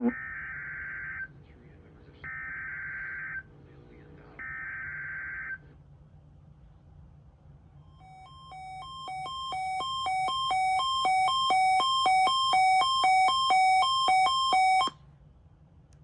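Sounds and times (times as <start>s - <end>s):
two-tone electronic warble alarm: 0.0s - 1.4s, 2.2s - 3.5s, 4.4s - 5.6s, 7.9s - 15.0s.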